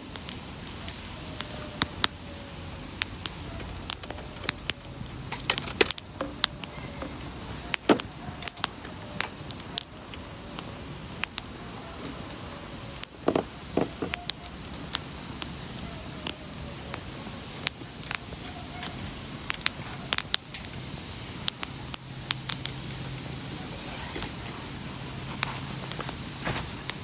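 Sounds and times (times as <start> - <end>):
wood fire crackling and popping: 0.0 - 27.0.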